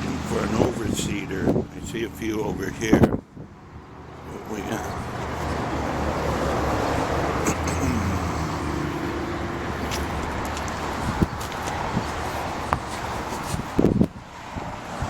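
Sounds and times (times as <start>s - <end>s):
vehicle engine running: 0.0s - 14.1s.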